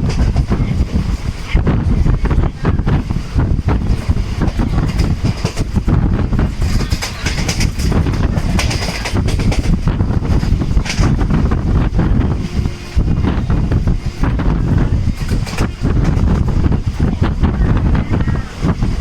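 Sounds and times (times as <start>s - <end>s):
train coach rumbling: 0.0s - 19.0s
wheels clattering over rail joints: 0.0s - 19.0s
wind buffeting microphone: 0.0s - 19.0s.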